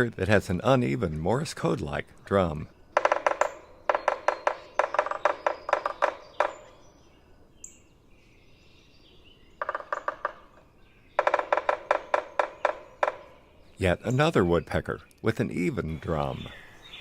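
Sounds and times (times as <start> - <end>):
woodpecker drumming on wood: 0.0 - 7.1, 9.5 - 14.4.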